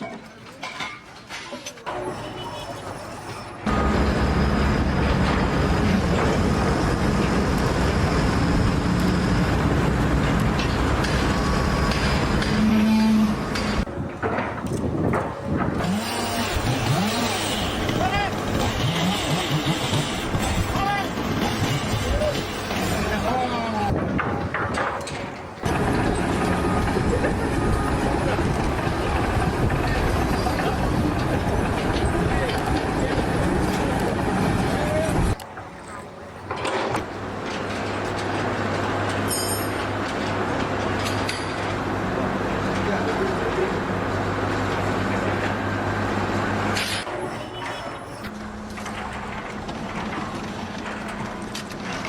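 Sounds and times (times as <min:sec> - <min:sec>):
large engine running: 0:03.7 - 0:13.8, 0:25.7 - 0:35.4.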